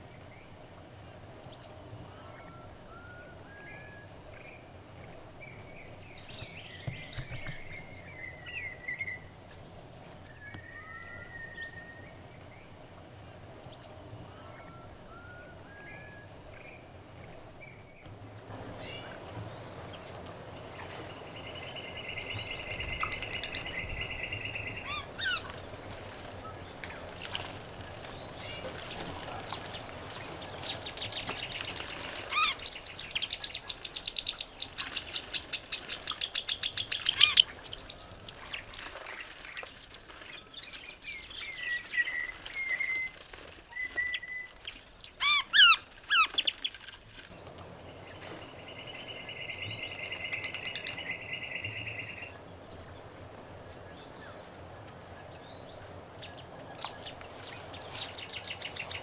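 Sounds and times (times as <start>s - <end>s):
birds whistling and chirping: 10.3s - 12.2s, 30.4s - 38.7s, 40.6s - 46.6s
sharp bird calls: 21.2s - 25.7s, 28.2s - 38.9s, 43.8s - 46.9s
bird trilling: 30.8s - 33.8s, 34.8s - 38.1s, 45.2s - 46.6s.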